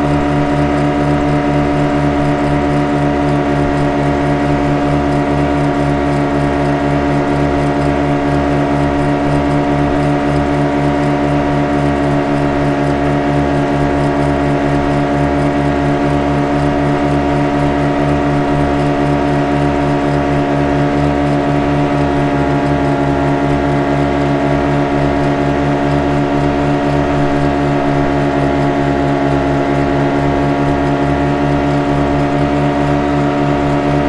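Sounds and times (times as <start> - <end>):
motorboat engine running: 0.0 - 34.0.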